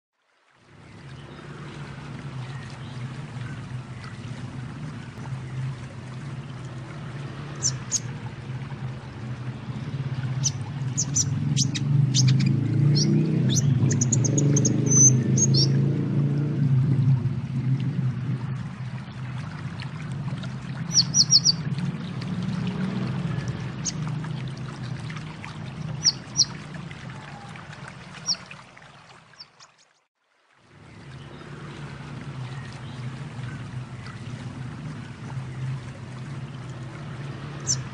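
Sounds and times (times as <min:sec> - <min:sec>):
water-like rushing: 0:00.2 - 0:37.9
high bird chirps: 0:10.4 - 0:15.7, 0:20.9 - 0:21.6.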